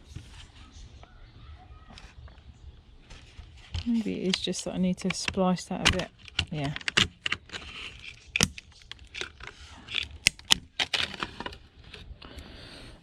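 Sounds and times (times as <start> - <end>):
plastic casing cracking and clicking: 3.7 - 12.1.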